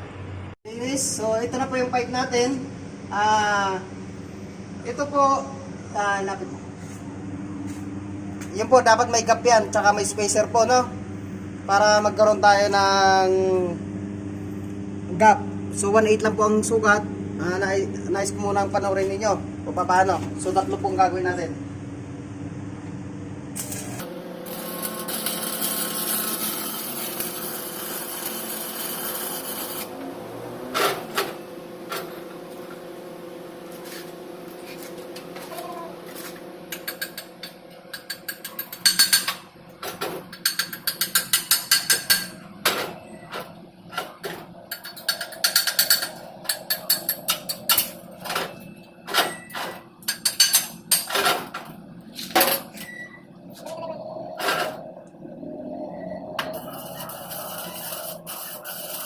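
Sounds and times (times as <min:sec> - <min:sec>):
steady low hum: 0:00.0 - 0:59.0
welding arc crackling and hissing: 0:23.6 - 0:30.0, 0:56.5 - 0:59.0.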